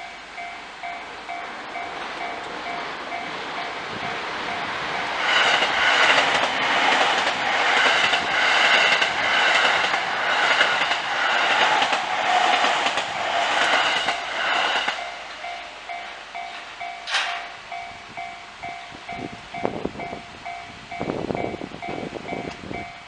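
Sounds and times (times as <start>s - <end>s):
two-tone crossing warning alarm: 0.0s - 11.9s, 12.5s - 23.0s
train wheels clacking over rail joints: 4.5s - 17.8s.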